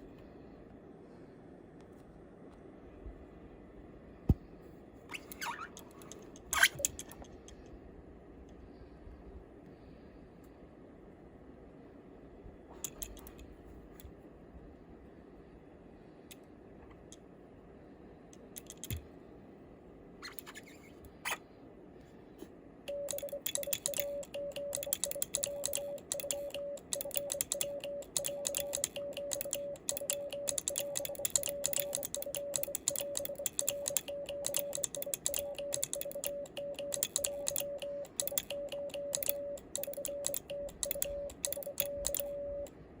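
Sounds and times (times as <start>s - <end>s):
morse key clicking: 22.9s - 42.7s
morse sidetone beeping: 22.9s - 42.7s.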